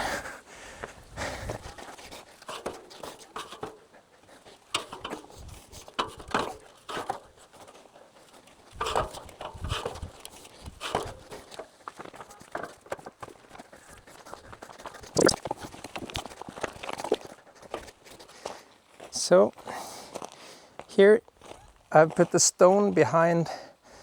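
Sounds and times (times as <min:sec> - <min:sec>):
person panting: 0:00.0 - 0:02.3, 0:19.6 - 0:20.8, 0:23.5 - 0:24.0.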